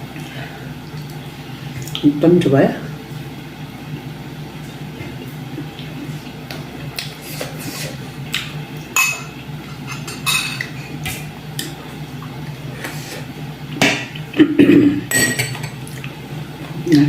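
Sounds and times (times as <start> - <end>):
steady low hum: 0.0 - 17.0
spoon clinking on a plate: 15.1 - 15.8.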